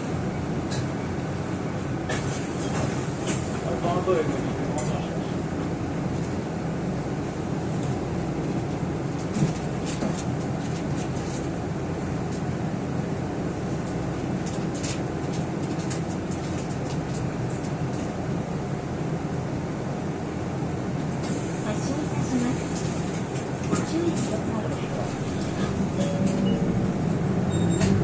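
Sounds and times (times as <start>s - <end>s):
train rumble inside carriage: 0.0s - 28.0s.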